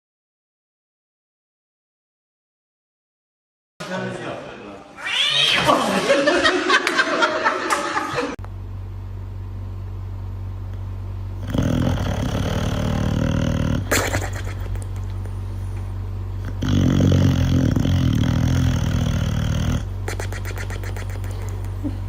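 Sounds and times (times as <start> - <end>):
steady low hum: 5.9 - 22.0.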